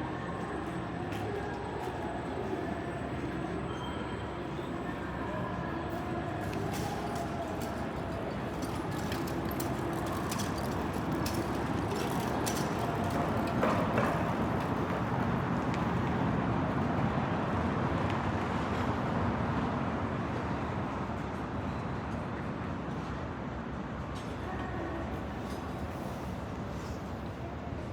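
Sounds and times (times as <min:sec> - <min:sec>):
traffic rumble: 0:00.0 - 0:18.5.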